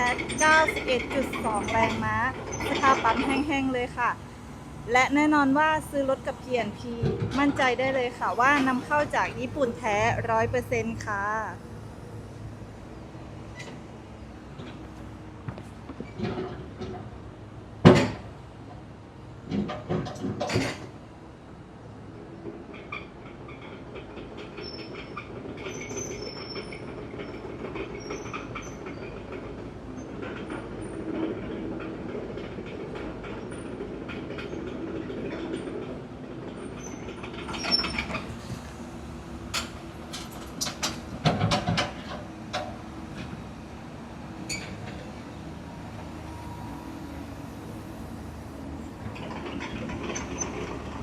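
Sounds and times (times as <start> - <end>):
metallic clicks squeaks and clanks: 0.0 - 3.6, 13.5 - 13.8, 24.5 - 29.4, 36.5 - 38.4, 44.5 - 45.0, 49.2 - 51.0
excavator diesel engine running: 0.0 - 51.0.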